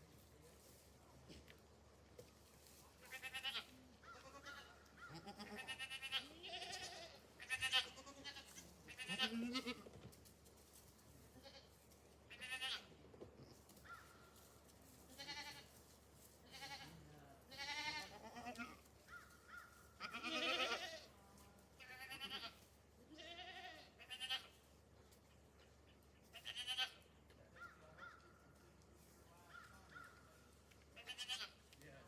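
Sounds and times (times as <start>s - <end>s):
goats bleating: 3.0s - 9.9s, 11.4s - 11.7s, 12.3s - 12.9s, 15.1s - 15.7s, 16.5s - 18.8s, 20.0s - 21.1s, 21.8s - 24.6s, 26.3s - 27.0s, 31.0s - 31.6s.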